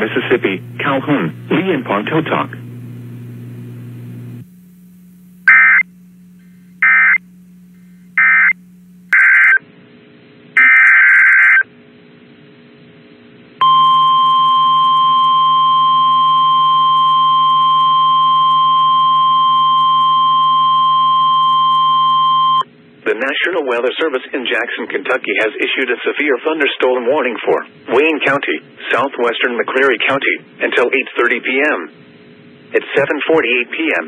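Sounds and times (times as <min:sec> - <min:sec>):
steady single-pitch alert tone: 0:05.4 - 0:05.9, 0:06.8 - 0:07.2, 0:08.2 - 0:09.6, 0:13.6 - 0:22.6
harsh digital data bursts: 0:05.5 - 0:05.8, 0:06.8 - 0:07.2.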